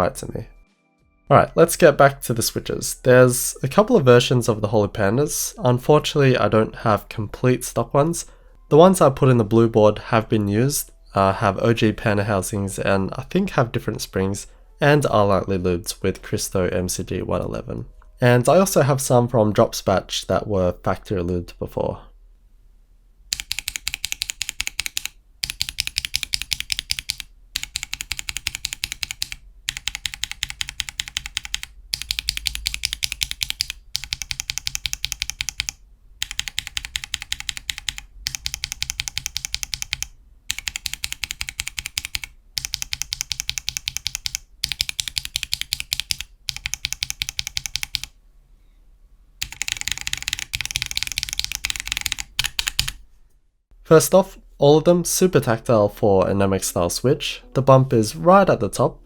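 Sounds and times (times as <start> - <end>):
fast typing on mechanical keyboard: 23.3 - 48.1, 49.4 - 53.0.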